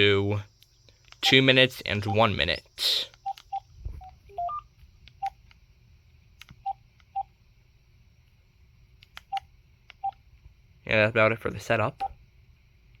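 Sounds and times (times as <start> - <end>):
cordless phone key beeps: 3.2 - 4.6, 5.2 - 5.4.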